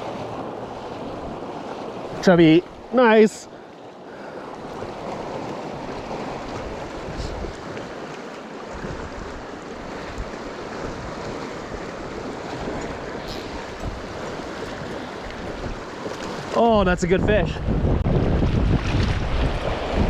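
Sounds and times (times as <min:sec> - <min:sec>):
rushing river water: 0:00.0 - 0:20.0
wind buffeting microphone: 0:04.6 - 0:07.8, 0:08.7 - 0:20.0.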